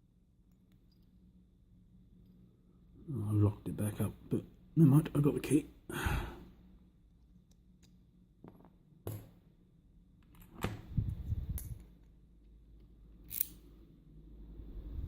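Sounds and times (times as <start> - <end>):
lock cylinder and key clicking: 13.2 - 13.6.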